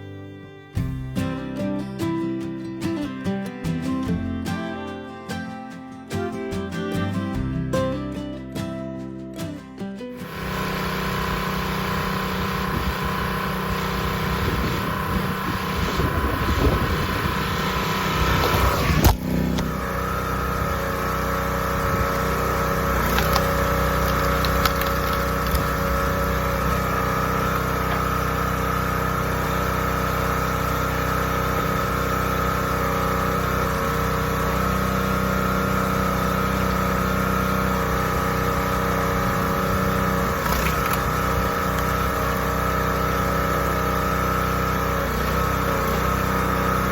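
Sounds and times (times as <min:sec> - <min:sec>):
gas engine running: 0:00.0 - 0:09.4, 0:10.1 - 0:46.9
sharp crack: 0:22.9 - 0:26.0.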